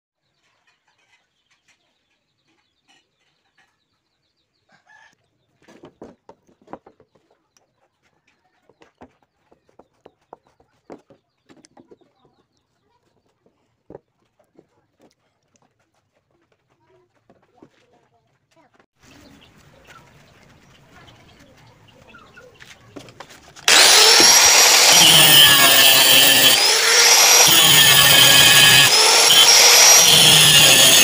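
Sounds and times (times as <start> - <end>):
chickens clucking: 19.0 - 23.6.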